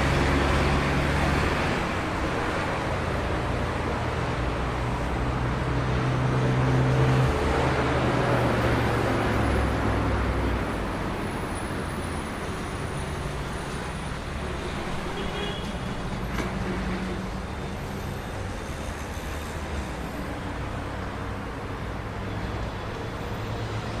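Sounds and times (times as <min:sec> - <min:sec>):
traffic idling and moving slowly: 0:00.0 - 0:24.0.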